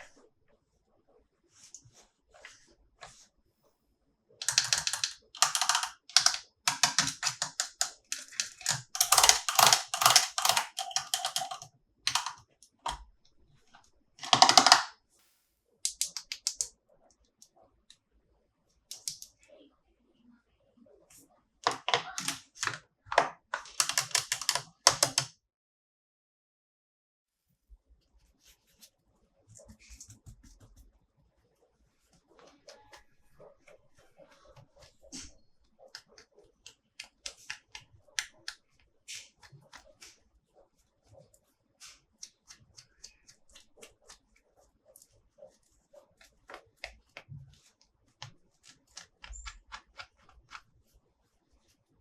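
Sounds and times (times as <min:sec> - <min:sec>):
toy packaging clicking and crackling: 0:04.4 - 0:13.0, 0:14.2 - 0:14.9, 0:23.6 - 0:25.3.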